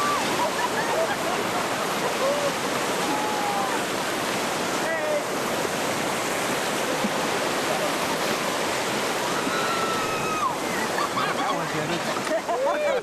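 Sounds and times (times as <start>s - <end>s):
river rapids rushing: 0.0s - 13.0s
faint shouts: 2.2s - 3.8s.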